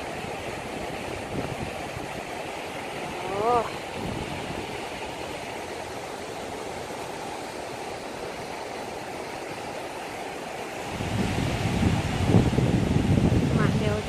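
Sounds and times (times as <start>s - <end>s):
wind buffeting microphone: 0.0s - 7.8s, 10.8s - 14.0s
water rushing: 0.0s - 14.0s.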